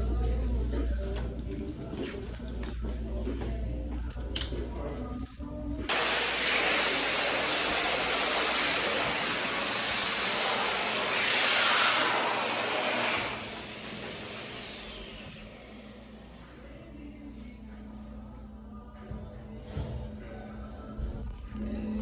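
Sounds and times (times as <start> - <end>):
toilet flushing: 5.9 - 15.7.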